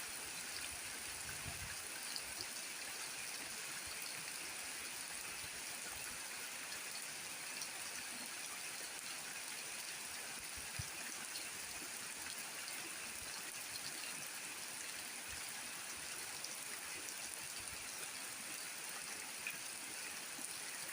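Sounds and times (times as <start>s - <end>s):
faint drips and ticks: 6.7s - 20.9s.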